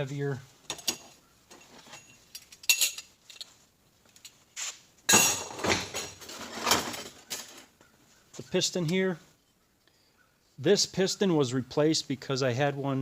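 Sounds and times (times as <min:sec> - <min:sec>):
metal parts clinking: 0:00.7 - 0:04.4
metal clattering and rattling: 0:05.1 - 0:07.7.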